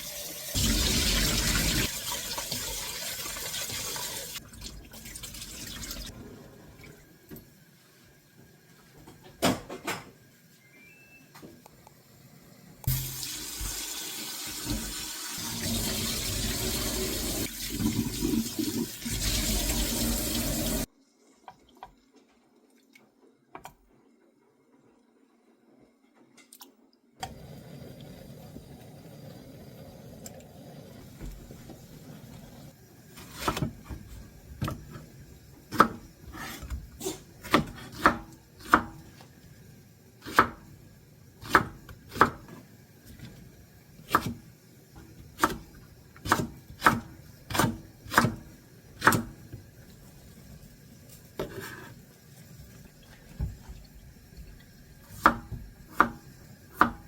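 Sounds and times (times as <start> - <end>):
knife chopping on wooden board: 46.2 - 48.4, 56.8 - 57.0.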